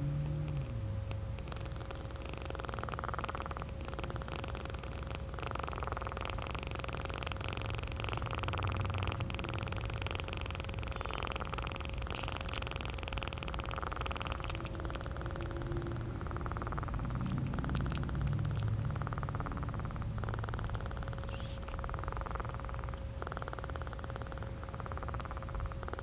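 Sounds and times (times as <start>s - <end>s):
kitten purring: 0.0s - 26.0s.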